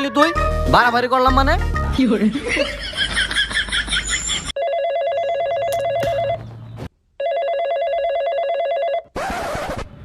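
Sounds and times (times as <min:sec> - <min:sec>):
electronic telephone ringing: 0:04.6 - 0:06.4, 0:07.2 - 0:09.1.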